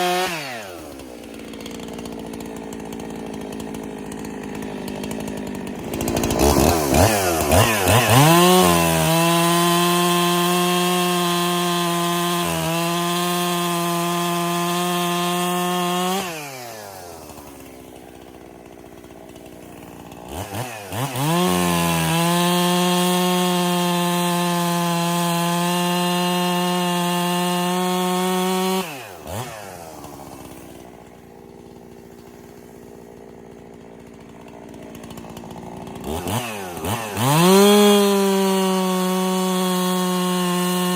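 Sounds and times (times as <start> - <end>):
chainsaw revving and idling: 0.0 - 40.9.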